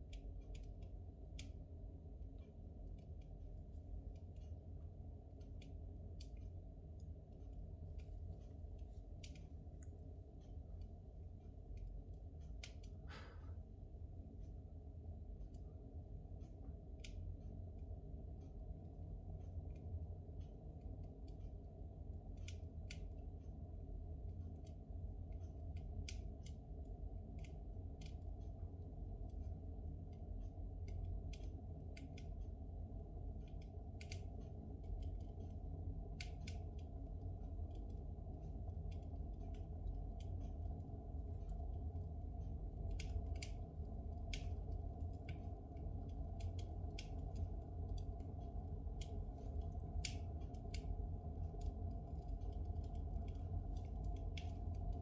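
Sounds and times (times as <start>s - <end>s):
wood crackling and popping: 30.8s - 55.0s.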